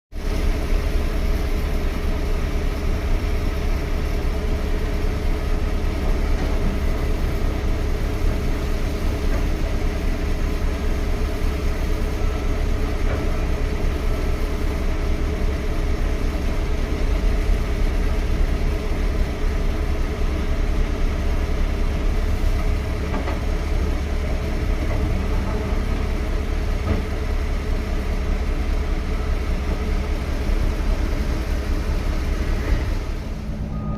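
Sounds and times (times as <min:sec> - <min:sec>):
heavy diesel engine running: 0:00.1 - 0:33.9.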